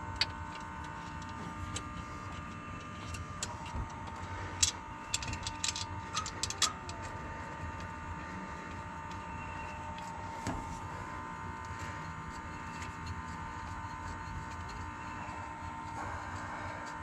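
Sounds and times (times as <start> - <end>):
steady high hum: 0.0 - 17.0
metallic clicks of small parts: 3.0 - 7.1.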